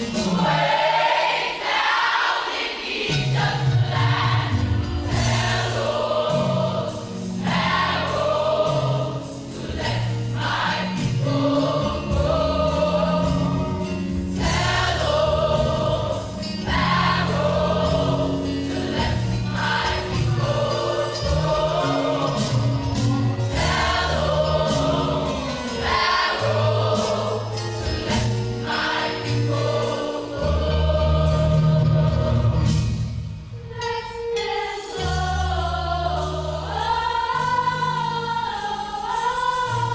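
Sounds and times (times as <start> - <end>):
choir singing gospel: 0.0 - 39.9
band with bass and percussion: 3.2 - 33.7.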